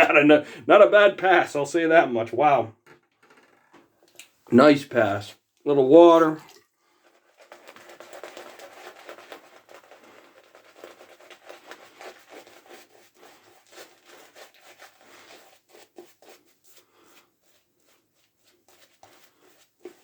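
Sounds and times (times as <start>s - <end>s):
shaving brush rubbing lather: 7.9s - 20.0s.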